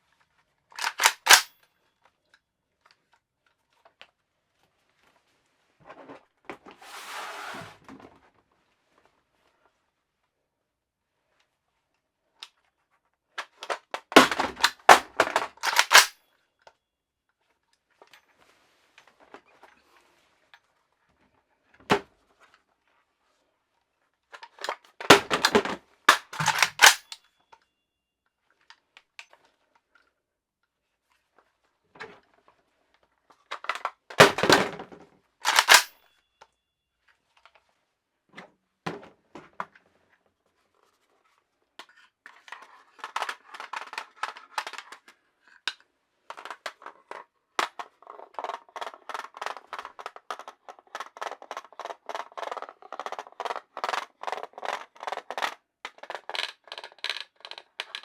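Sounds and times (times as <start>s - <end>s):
rapid small clicks and rattles: 0.8s - 1.6s, 13.4s - 16.2s, 25.4s - 27.2s, 41.8s - 58.0s
sharp metal clacks of gun: 0.8s - 1.6s, 13.4s - 16.2s, 25.1s - 27.3s, 35.4s - 36.2s.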